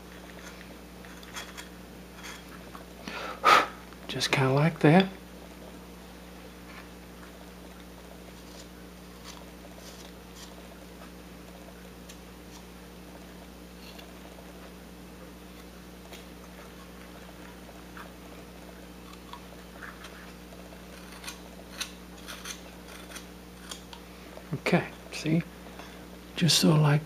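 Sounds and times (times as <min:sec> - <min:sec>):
steady low hum: 0:00.0 - 0:27.0
carving tool cutting into wood: 0:20.9 - 0:23.8.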